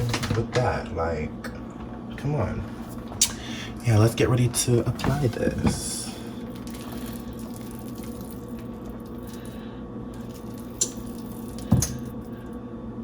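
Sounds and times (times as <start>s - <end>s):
steady low hum: 0.0s - 13.0s
cake batter squishing: 4.0s - 12.5s.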